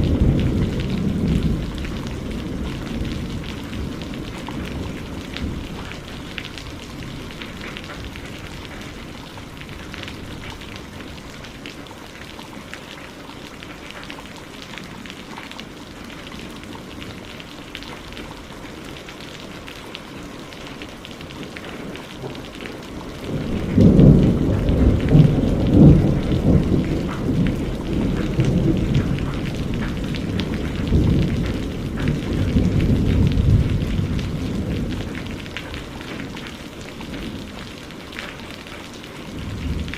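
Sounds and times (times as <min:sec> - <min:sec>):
low rumble of thunder: 0:00.0 - 0:11.6, 0:22.2 - 0:38.4, 0:39.2 - 0:39.9
rain pattering: 0:00.0 - 0:39.9.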